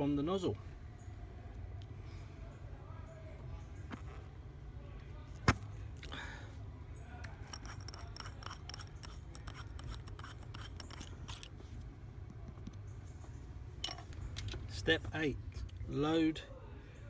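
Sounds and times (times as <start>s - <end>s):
small metal tools clicking and scraping: 7.2s - 11.7s, 13.8s - 14.8s.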